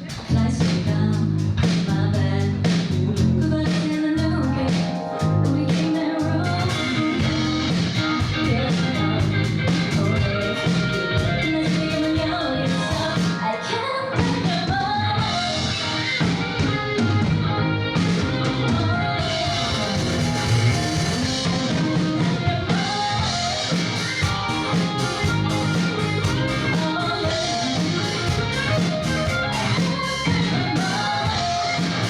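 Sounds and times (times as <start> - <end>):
person singing: 0.0 - 16.6, 18.5 - 32.0
bass: 0.0 - 32.0
keyboard: 0.0 - 32.0
electric guitar: 3.2 - 32.0
drum hits: 19.2 - 32.0.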